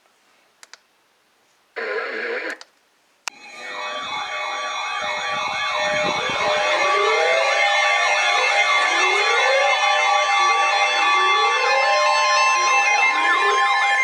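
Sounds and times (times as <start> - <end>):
faint clicks: 0.6 - 0.8
sirens warbling: 3.3 - 14.0
steady ringing tones: 3.3 - 14.0.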